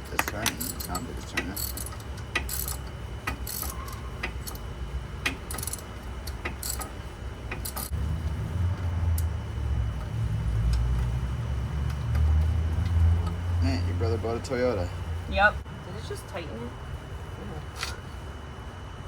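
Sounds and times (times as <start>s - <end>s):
hand ratchet clicking: 0.2s - 4.6s, 5.2s - 6.9s, 7.5s - 7.9s.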